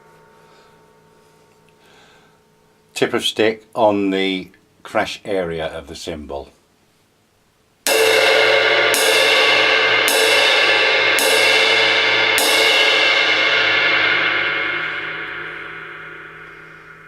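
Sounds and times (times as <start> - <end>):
crash cymbal ringing: 0.0 - 2.9, 7.9 - 17.0.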